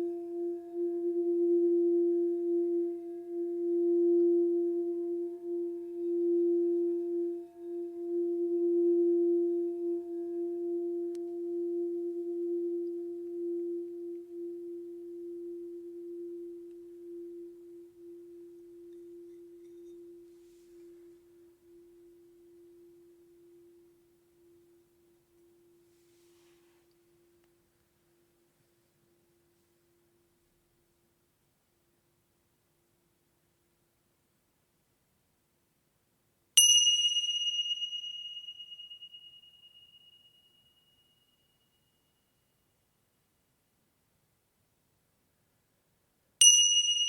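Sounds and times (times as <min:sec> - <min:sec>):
crystal singing bowl ringing: 0:00.0 - 0:24.0, 0:36.6 - 0:42.4, 0:46.4 - 0:47.0.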